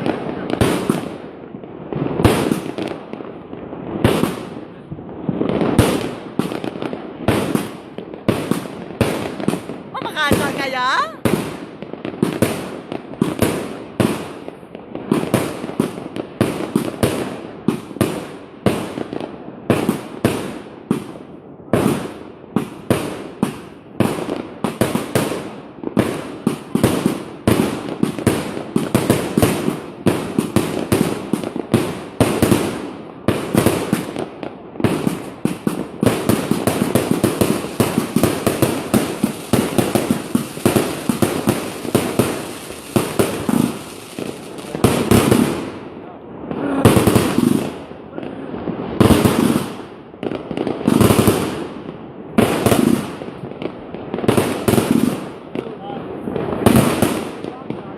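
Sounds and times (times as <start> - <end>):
fireworks cake bangs: 0.0 - 57.9.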